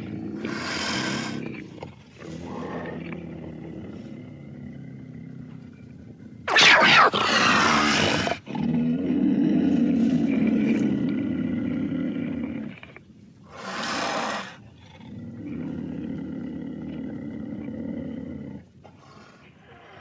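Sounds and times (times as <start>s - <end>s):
cougar growling: 0.0s - 20.0s
breathy hiss: 0.4s - 1.5s, 13.5s - 14.6s, 18.8s - 20.0s.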